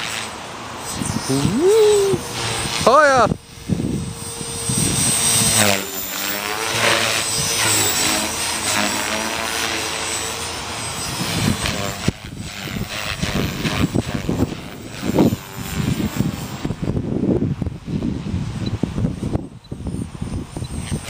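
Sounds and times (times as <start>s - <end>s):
rc helicopter rotor whine: 0.0s - 21.0s
wind buffeting microphone: 0.8s - 5.9s, 11.0s - 21.0s.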